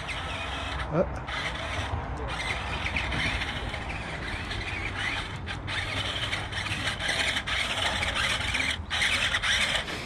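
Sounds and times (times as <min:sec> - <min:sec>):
toy vehicle motor whine: 0:00.0 - 0:10.0.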